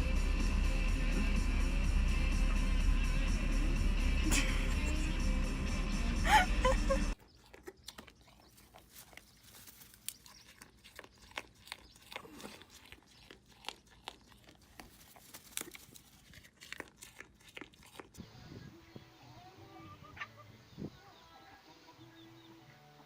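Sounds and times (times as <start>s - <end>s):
animal chewing food: 7.2s - 18.4s.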